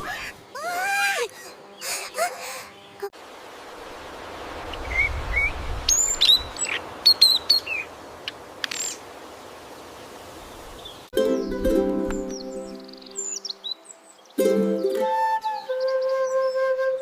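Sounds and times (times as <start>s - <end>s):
steady forest hiss: 0.0s - 17.0s
songbird chirping: 4.0s - 17.0s
ukulele music: 11.1s - 13.2s, 14.4s - 15.6s.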